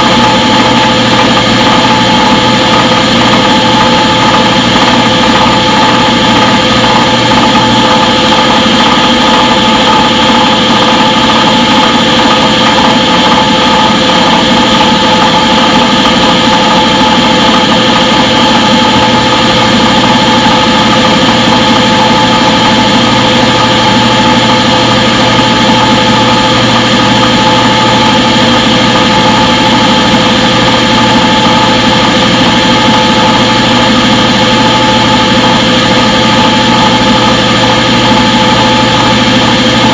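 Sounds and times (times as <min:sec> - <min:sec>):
washing machine spin whirring: 0:00.0 - 0:39.9.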